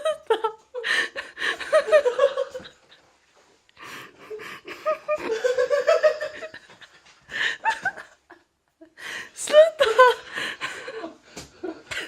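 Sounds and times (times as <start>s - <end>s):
person laughing uncontrollably: 4.4s - 8.4s.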